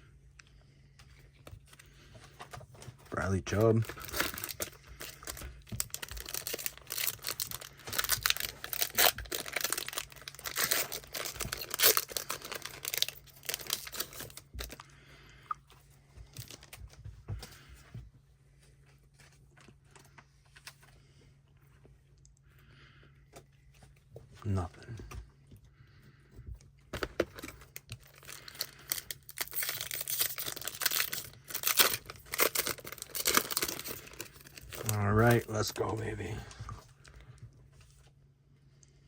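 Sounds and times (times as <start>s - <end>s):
foil wrapper tearing and crinkling: 3.5s - 14.8s, 27.0s - 35.8s.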